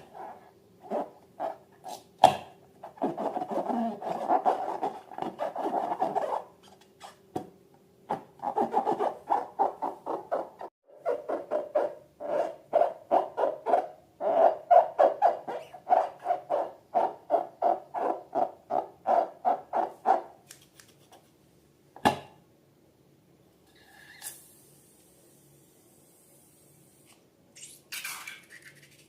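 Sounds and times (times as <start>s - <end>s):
rubber balloons squeaking: 2.8s - 7.2s, 8.1s - 20.3s.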